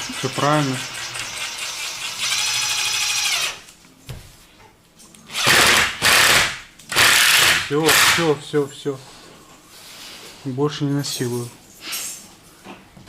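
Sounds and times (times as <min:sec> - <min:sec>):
cordless drill driving screws: 0:00.2 - 0:03.6, 0:05.3 - 0:08.3.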